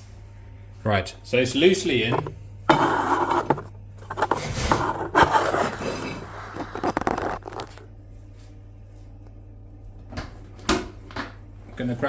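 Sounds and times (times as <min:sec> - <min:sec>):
rustling crinkling handling noise: 0:02.1 - 0:07.9.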